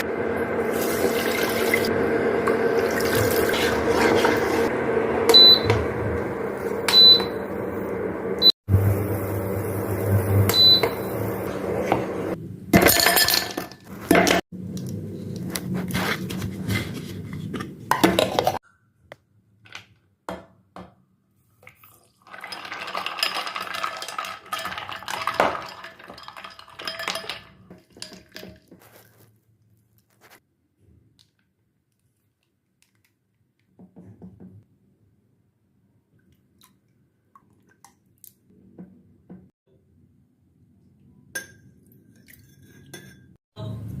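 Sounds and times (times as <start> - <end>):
dishes and utensils clinking: 22.4 - 29.0.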